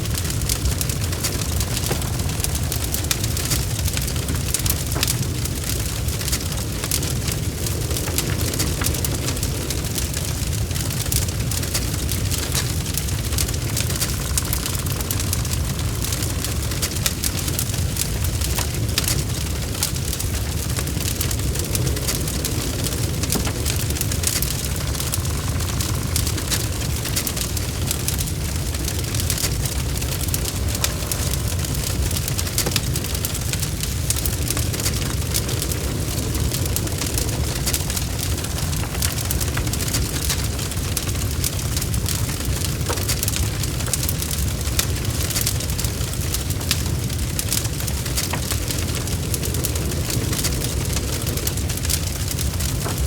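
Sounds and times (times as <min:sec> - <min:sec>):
low rumble: 0:00.0 - 0:53.0
wood fire crackling: 0:00.0 - 0:53.0.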